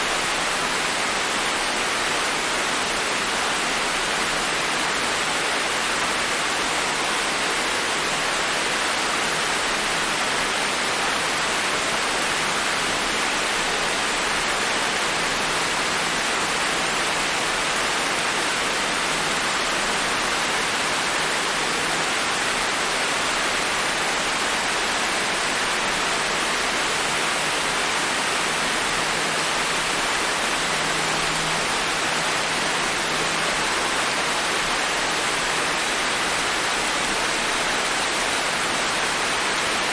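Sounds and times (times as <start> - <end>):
gentle rain falling: 0.0 - 39.9.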